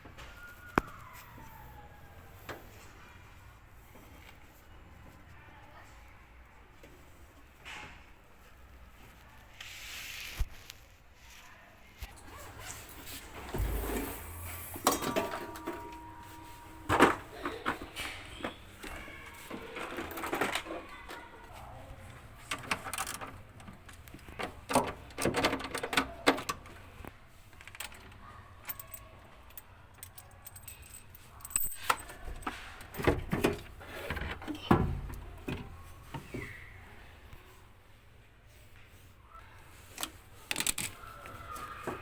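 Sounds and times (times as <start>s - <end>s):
tools and metal parts clinking: 12.1s - 26.8s, 27.5s - 36.4s, 39.9s - 42.0s.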